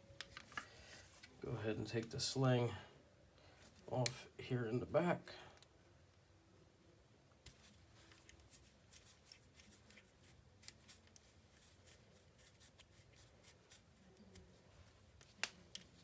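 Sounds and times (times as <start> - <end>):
small clicks and rustles: 0.1 - 2.2, 7.4 - 16.0.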